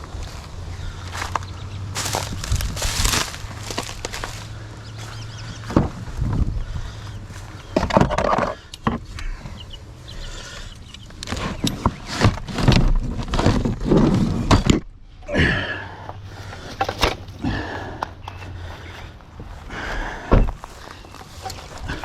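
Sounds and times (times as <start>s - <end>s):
footsteps: 0.0s - 7.7s, 18.7s - 22.0s
wind: 0.0s - 22.0s
gear knocking and clanking: 10.6s - 15.0s.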